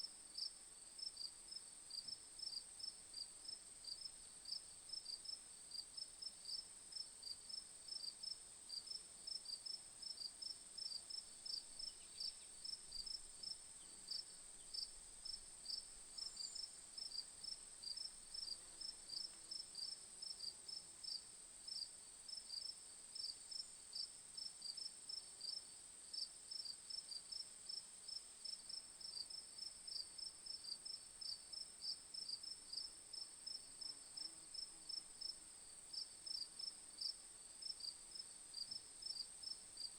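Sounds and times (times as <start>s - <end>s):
crickets chirping: 10.8s - 20.0s.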